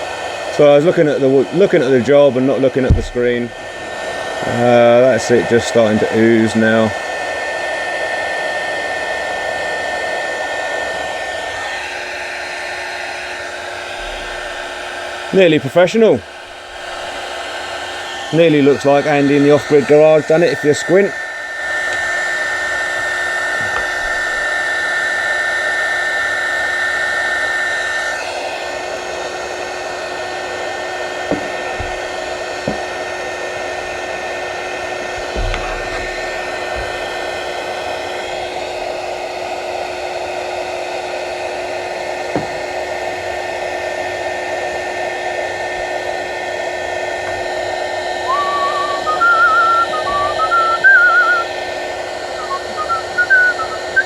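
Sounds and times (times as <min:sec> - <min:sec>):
heat gun blowing: 0:00.0 - 0:54.0
person whistling a tune: 0:48.2 - 0:51.5, 0:52.4 - 0:54.0
high steady tone: 0:48.3 - 0:51.5.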